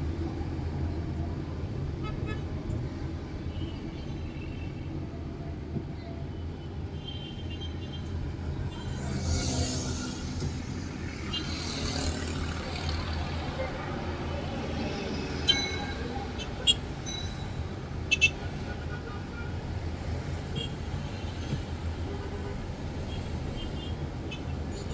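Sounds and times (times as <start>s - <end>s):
engine and road hum: 0.0s - 24.9s
vehicles swishing past: 8.4s - 18.6s.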